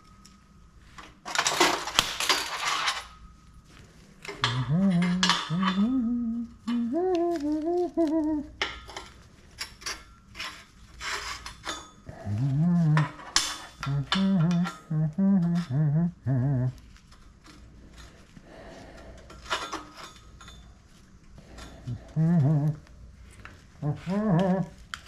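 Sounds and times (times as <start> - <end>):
metal pieces clinking: 1.3 - 3.2
man humming: 4.4 - 8.6, 12.1 - 13.2, 13.8 - 16.8, 21.8 - 22.9, 23.8 - 24.8.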